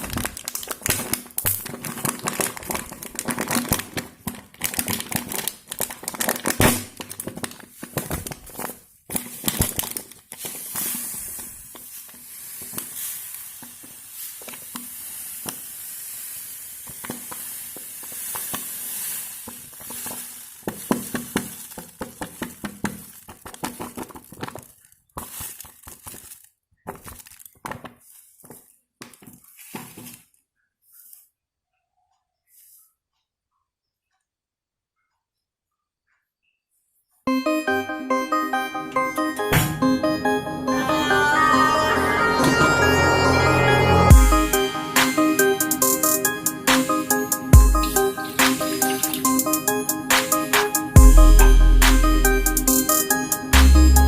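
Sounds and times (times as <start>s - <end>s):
slime clicking and crackling: 0.0s - 16.1s, 16.7s - 30.2s.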